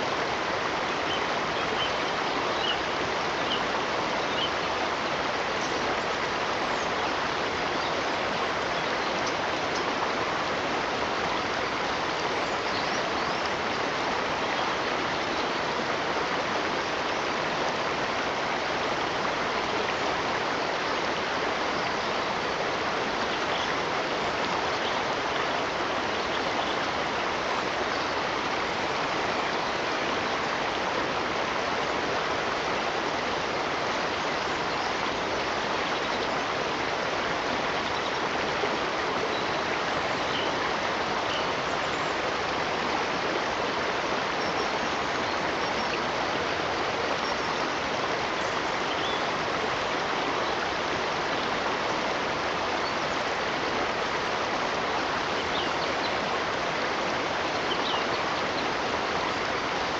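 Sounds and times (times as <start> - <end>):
stream water rushing: 0.0 - 59.9.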